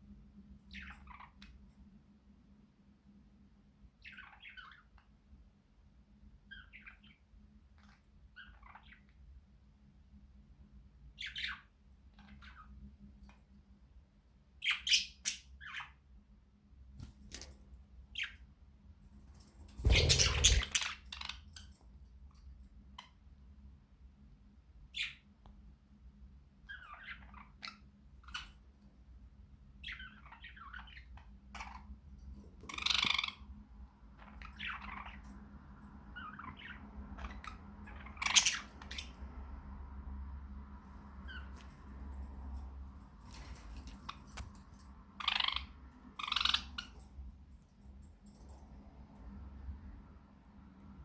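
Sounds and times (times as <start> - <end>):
budgerigars chirping and squawking: 0.7 - 1.4, 7.8 - 9.1, 11.2 - 11.6, 19.8 - 21.4, 26.7 - 28.6, 34.2 - 35.3, 36.2 - 39.2, 45.2 - 47.0.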